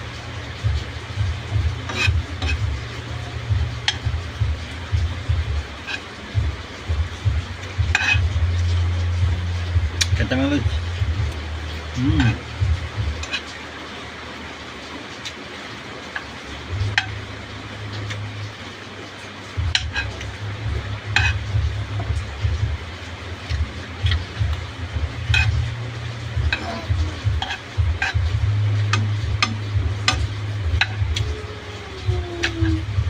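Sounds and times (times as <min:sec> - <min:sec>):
heavy low rumble: 0:00.0 - 0:14.8, 0:15.4 - 0:33.0
steady hiss: 0:00.0 - 0:33.0
fork scraping a frying pan: 0:01.4 - 0:06.4, 0:07.6 - 0:09.2, 0:12.1 - 0:13.6, 0:16.1 - 0:17.2, 0:19.6 - 0:22.4, 0:23.4 - 0:31.4.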